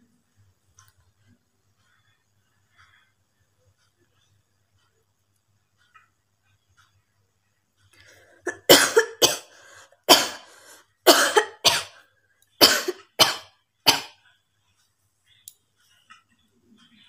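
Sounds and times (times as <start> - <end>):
person coughing: 8.5 - 9.5, 10.1 - 12.0, 12.6 - 14.2.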